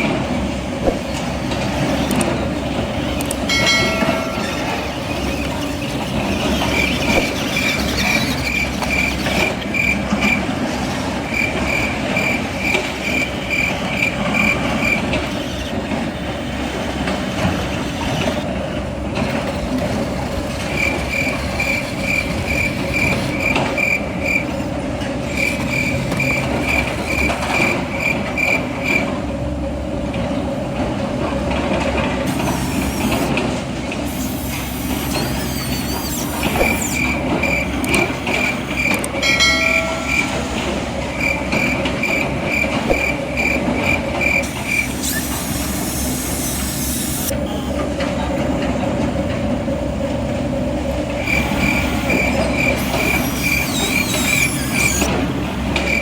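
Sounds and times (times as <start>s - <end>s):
model machinery noise: 0.0s - 56.0s
high-pitched reversing beeper: 34.1s - 41.0s.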